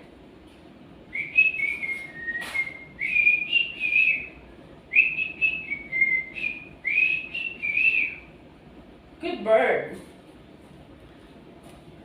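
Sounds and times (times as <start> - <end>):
cockatiel whistling a tune: 1.1 - 4.3, 4.9 - 8.3.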